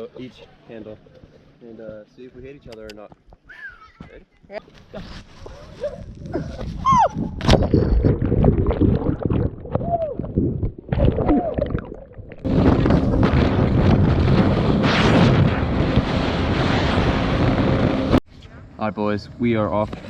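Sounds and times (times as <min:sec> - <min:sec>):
wind buffeting microphone: 0:05.4 - 0:11.7, 0:12.4 - 0:18.2
jet ski engine running: 0:15.6 - 0:18.2.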